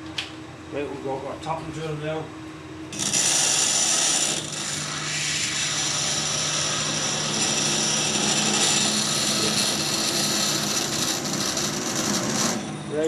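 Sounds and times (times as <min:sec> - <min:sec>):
drill cutting steel with high hiss: 0:02.9 - 0:12.8
metal lathe humming: 0:02.9 - 0:13.0.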